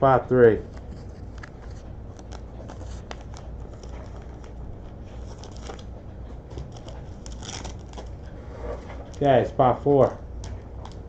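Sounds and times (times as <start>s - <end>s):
low steady hum: 0.0s - 11.0s
trading cards clicking and rustling: 0.6s - 8.3s.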